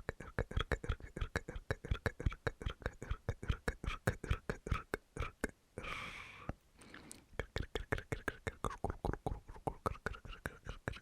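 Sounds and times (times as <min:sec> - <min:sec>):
tongue and lip clicks: 0:00.0 - 0:11.0
whispered consonant bursts: 0:07.3 - 0:11.0.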